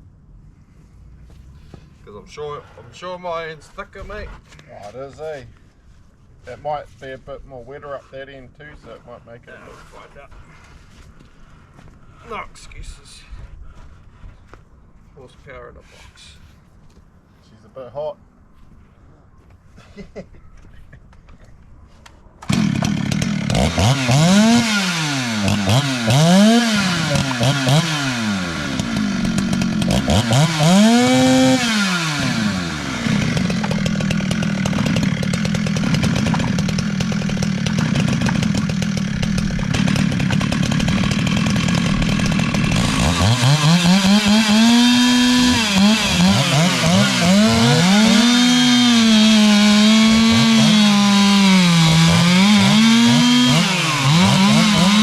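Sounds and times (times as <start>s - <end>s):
chainsaws revving: 22.4s - 55.0s.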